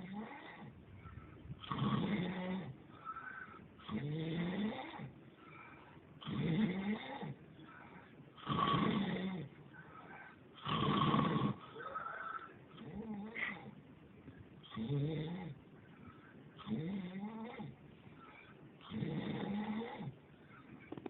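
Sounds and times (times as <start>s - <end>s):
soft breathing: 0.3s - 1.7s, 2.8s - 3.9s, 5.0s - 8.5s, 9.4s - 10.6s, 15.6s - 16.7s, 17.9s - 18.9s, 19.8s - 21.0s
man snoring: 1.6s - 2.7s, 3.8s - 5.1s, 6.2s - 7.4s, 8.4s - 9.5s, 10.6s - 13.6s, 14.7s - 15.6s, 18.9s - 20.1s.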